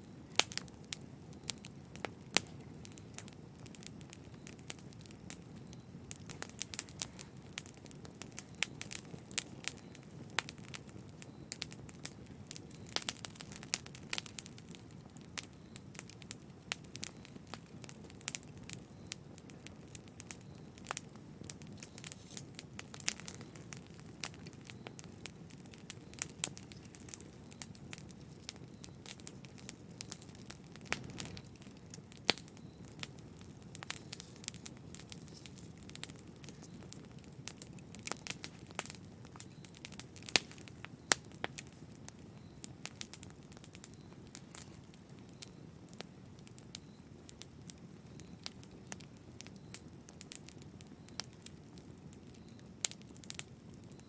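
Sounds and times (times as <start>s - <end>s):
low rumble of burning logs: 0.0s - 54.0s
wood fire crackling: 0.0s - 54.0s.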